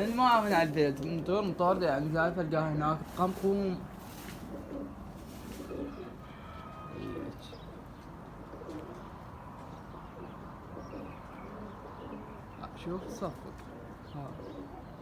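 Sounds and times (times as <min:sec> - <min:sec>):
pigeons cooing: 0:03.1 - 0:09.3, 0:09.9 - 0:15.0.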